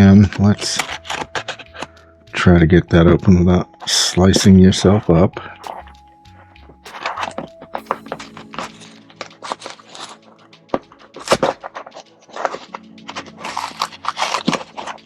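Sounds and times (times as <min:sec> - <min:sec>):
quiet background music: 0:00.0 - 0:15.0.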